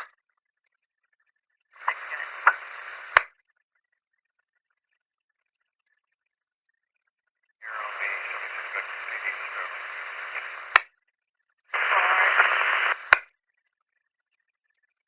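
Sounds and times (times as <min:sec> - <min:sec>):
garbled radio voice with hiss: 0:01.8 - 0:03.2, 0:07.6 - 0:10.8, 0:11.7 - 0:13.2
radio squelch click: 0:01.8 - 0:03.3, 0:07.7 - 0:10.9, 0:11.7 - 0:13.3.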